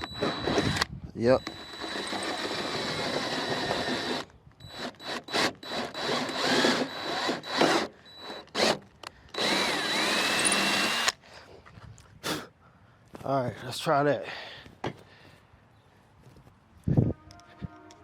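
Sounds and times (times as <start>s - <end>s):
power drill whining: 0.0s - 11.2s.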